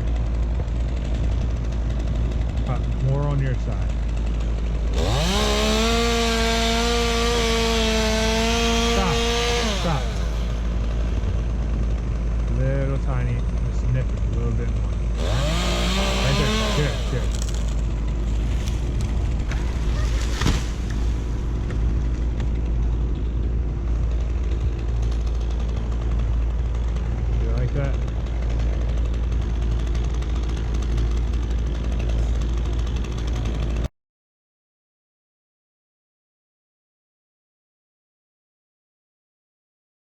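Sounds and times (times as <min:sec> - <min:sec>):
chainsaw cutting wood: 0:00.0 - 0:33.9
engine idling: 0:07.9 - 0:33.9.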